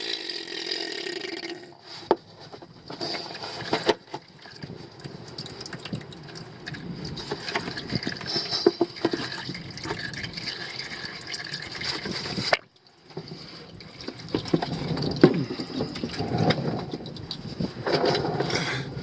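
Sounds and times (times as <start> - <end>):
fluid pouring from plastic bottle: 3.3 - 18.3.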